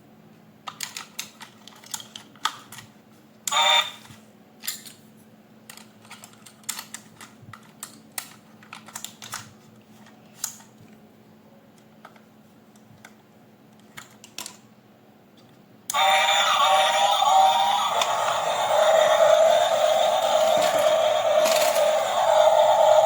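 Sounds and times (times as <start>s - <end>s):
plastic toy parts clicking: 0.6s - 2.9s, 4.6s - 5.0s, 5.7s - 10.7s, 13.8s - 14.6s.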